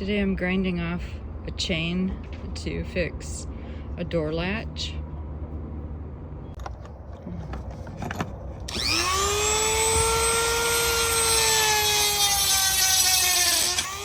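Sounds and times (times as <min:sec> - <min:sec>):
rotary tool whining: 0:07.8 - 0:14.0.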